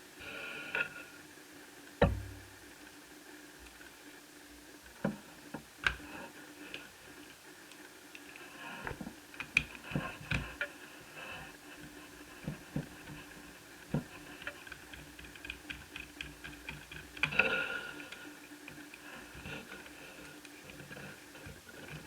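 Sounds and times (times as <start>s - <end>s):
sharp knocks: 2.0s - 2.5s.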